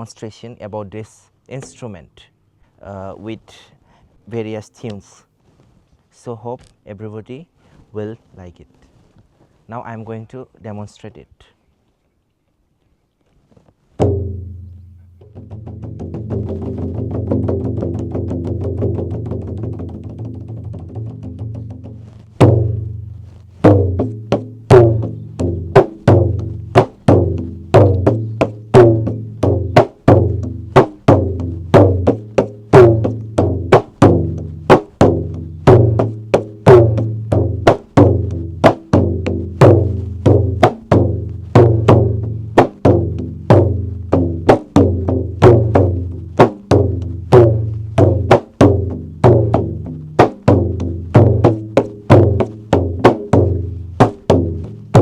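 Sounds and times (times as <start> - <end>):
large drum played rhythmically: 14.0 - 55.0.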